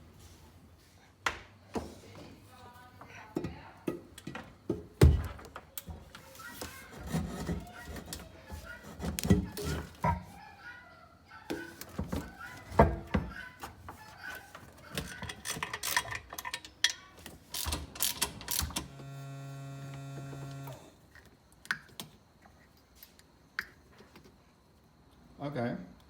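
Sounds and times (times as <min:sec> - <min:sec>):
hand tools clicking and ratcheting: 0:14.5 - 0:18.8.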